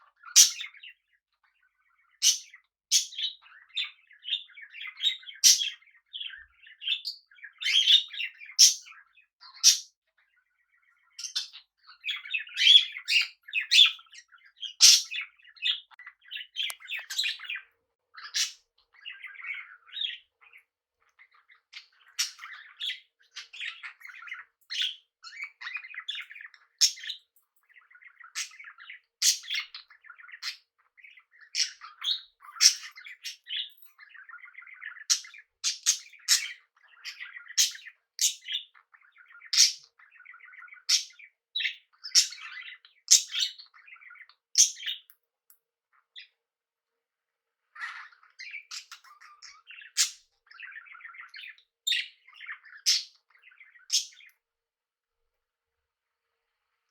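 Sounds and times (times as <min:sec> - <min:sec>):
parrots chirping and chattering: 0:00.0 - 0:45.1, 0:47.6 - 0:54.3.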